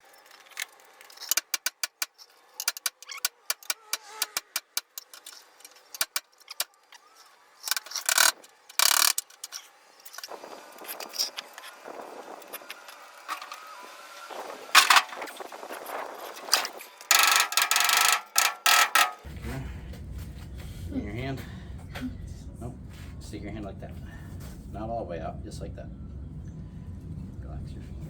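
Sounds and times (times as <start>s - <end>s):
metallic clicks and rattles: 0.0s - 11.7s, 16.4s - 19.3s
rough clatter: 0.0s - 13.7s, 14.3s - 19.5s.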